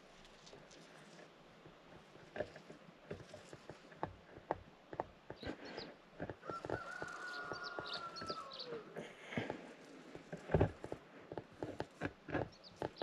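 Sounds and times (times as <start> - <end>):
chickens calling: 5.4 - 9.5.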